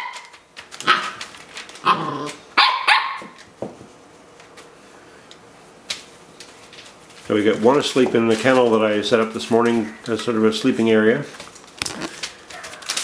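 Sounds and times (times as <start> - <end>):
puppy yapping: 1.8 - 3.4.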